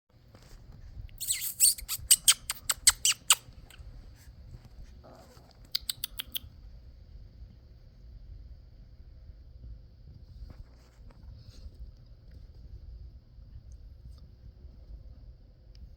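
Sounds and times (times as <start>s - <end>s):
person making kissing sounds: 1.2s - 3.8s, 5.7s - 6.5s.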